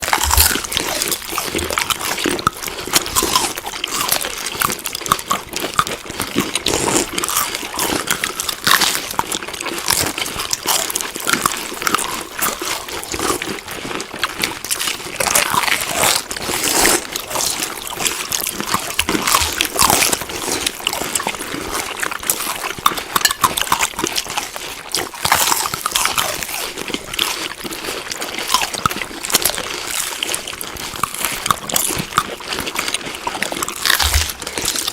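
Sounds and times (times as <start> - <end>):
person chewing food: 0.0 - 34.9.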